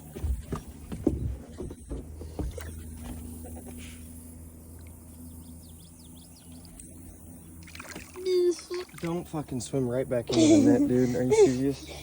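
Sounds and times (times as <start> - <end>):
steady low hum: 0.0 - 12.0
small birds chirping: 4.8 - 10.2.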